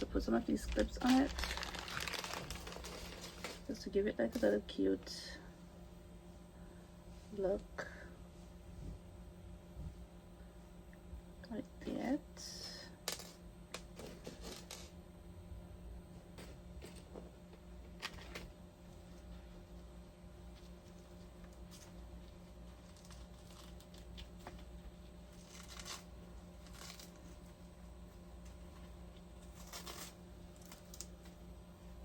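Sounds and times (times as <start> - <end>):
low electrical hum: 0.0 - 32.0
faint rustling and handling: 0.2 - 5.2, 16.3 - 31.4.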